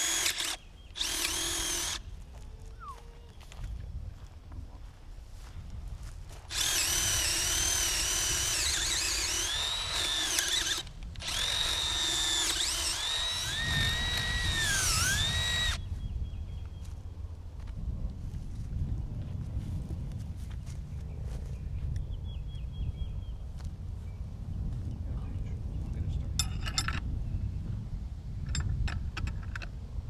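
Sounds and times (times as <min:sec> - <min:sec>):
electric drill motor whining: 0:00.0 - 0:02.8, 0:06.5 - 0:15.8.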